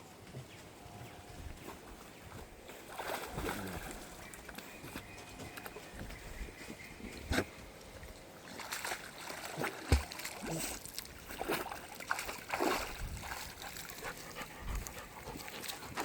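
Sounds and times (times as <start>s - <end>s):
dog splashing in water: 2.8s - 4.3s, 8.5s - 16.0s.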